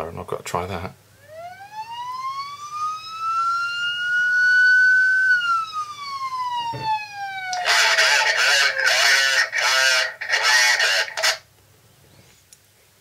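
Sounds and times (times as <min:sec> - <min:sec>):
police siren wail: 0:01.2 - 0:11.2.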